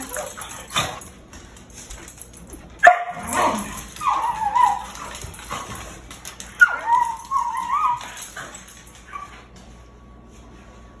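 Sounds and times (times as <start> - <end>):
dogs scuffling: 0.0 - 11.0
dog giving high wavering cries: 3.1 - 5.6, 6.5 - 9.3.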